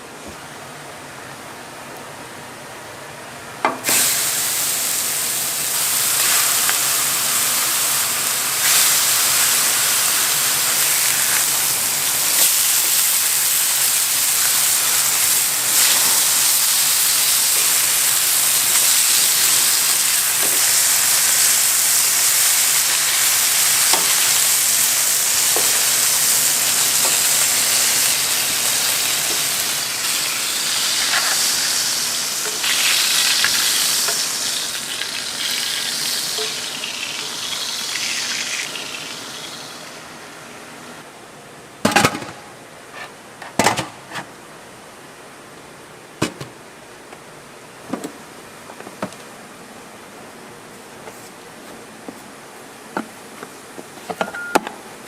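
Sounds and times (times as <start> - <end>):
food sizzling in a pan: 3.8 - 40.5.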